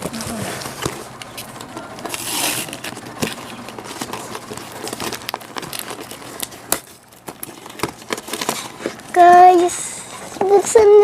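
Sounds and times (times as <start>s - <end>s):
packaging tearing and crinkling: 1.6s - 9.1s.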